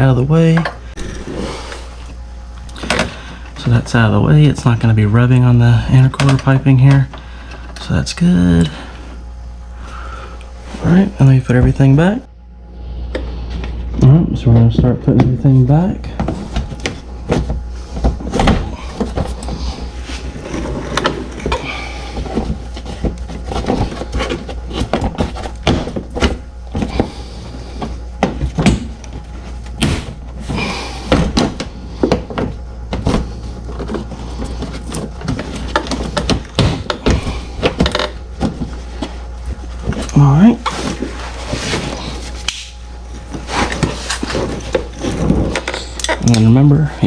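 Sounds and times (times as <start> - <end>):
steady low hum: 0.0 - 47.0.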